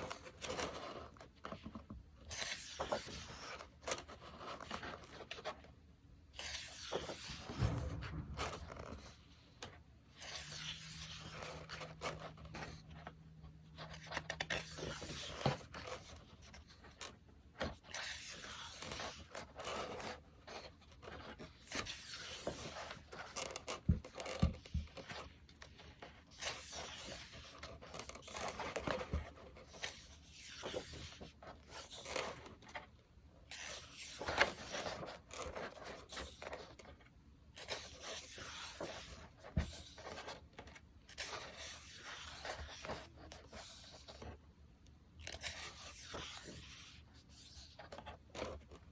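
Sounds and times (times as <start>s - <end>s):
soft knocks: 7.2s - 9.2s.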